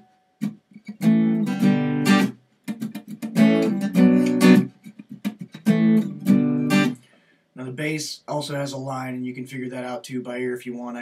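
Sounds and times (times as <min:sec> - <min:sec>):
acoustic guitar strumming chords: 0:00.0 - 0:07.0.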